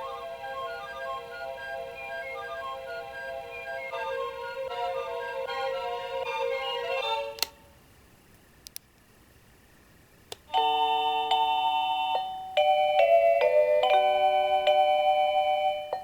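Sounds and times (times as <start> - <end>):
alarm clock chime melody: 10.5 - 16.0.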